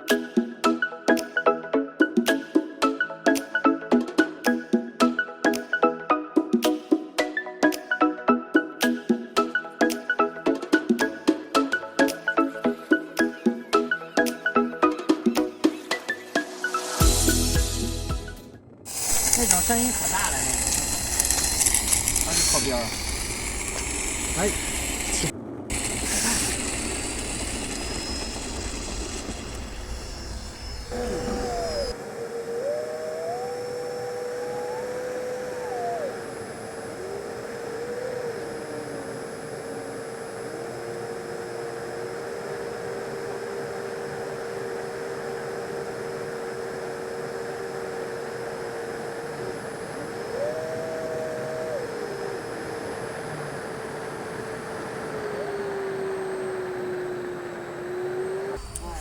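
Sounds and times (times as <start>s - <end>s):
electric ducted fan whining: 17.0s - 59.0s.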